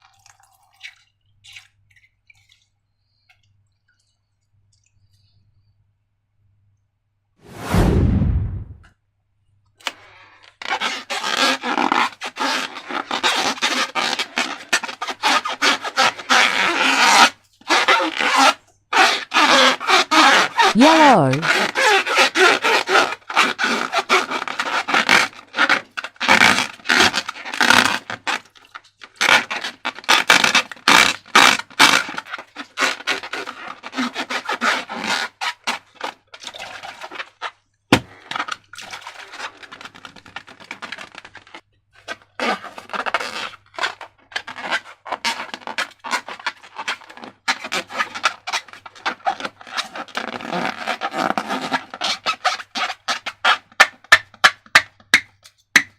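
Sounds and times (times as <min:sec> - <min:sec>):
slime and balloons squeezed: 0:10.7 - 0:28.5.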